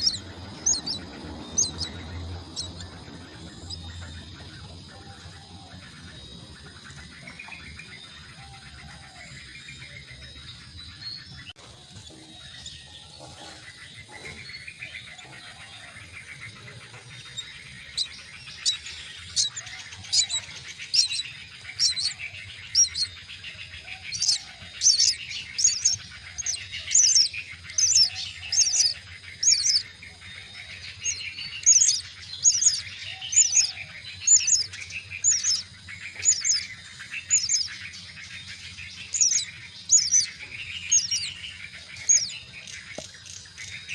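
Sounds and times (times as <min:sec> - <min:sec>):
bird chicks begging calls: 0:00.0 - 0:43.9.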